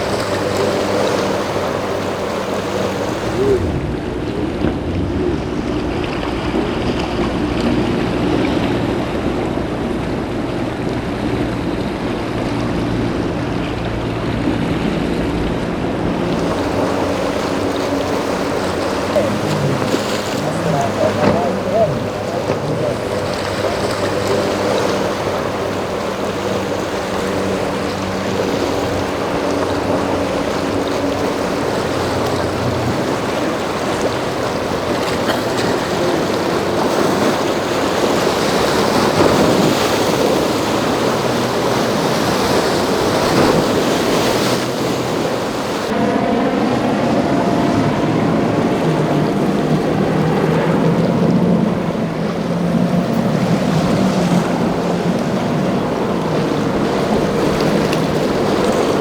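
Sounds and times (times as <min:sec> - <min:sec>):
surf breaking: 0:00.0 - 0:07.7, 0:16.0 - 0:59.0
boat engines running: 0:00.0 - 0:59.0.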